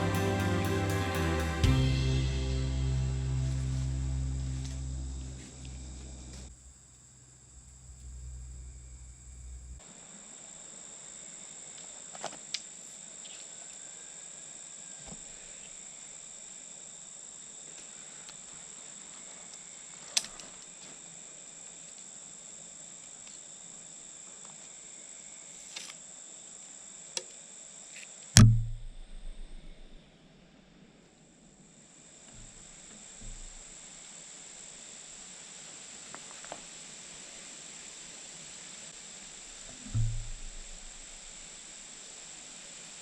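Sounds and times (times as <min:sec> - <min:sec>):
crickets chirping: 0:02.1 - 0:20.0
loud rattling thump: 0:28.4 - 0:30.0, 0:33.2 - 0:33.7, 0:39.6 - 0:41.5.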